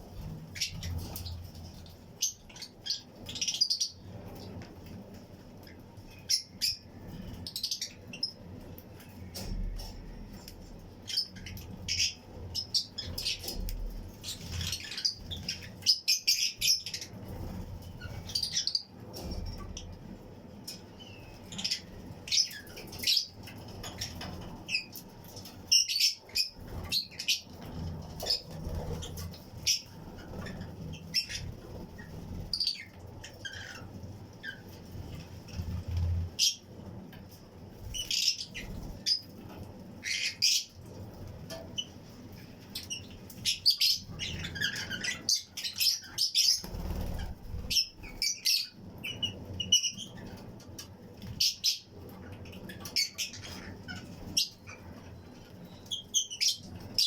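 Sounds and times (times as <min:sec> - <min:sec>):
lovebirds chirping: 0:00.2 - 0:04.1, 0:10.3 - 0:18.9, 0:20.9 - 0:25.0, 0:25.7 - 0:34.8, 0:42.7 - 0:50.4
wings flapping: 0:46.3 - 0:48.1.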